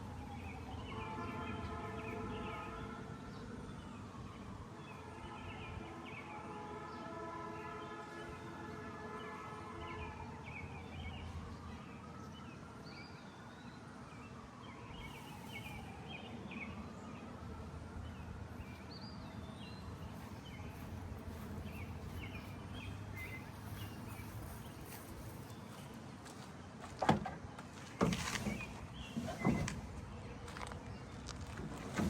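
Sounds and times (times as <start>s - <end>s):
birds chirping: 18.6s - 31.6s.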